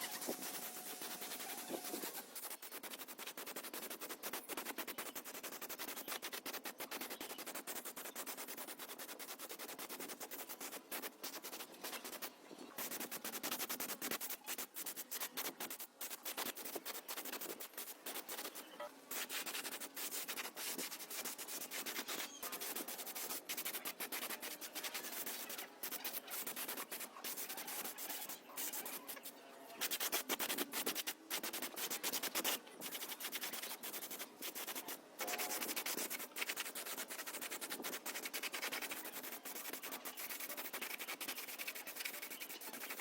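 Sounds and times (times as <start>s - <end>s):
sanding rusty metal by hand: 0.0s - 29.2s, 29.8s - 43.0s.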